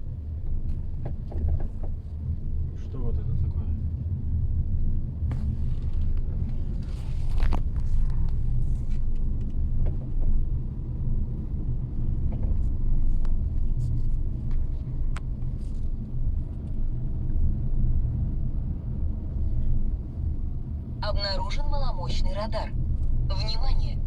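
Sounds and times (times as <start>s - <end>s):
low road rumble: 0.0s - 24.0s
seatback rattling knocks and creaks: 0.4s - 2.3s, 5.2s - 10.6s, 12.0s - 17.1s.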